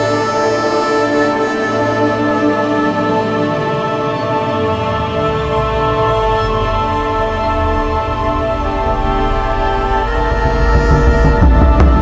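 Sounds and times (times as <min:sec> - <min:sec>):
background music with held chords: 0:00.0 - 0:12.0
deep bass swell: 0:04.4 - 0:12.0.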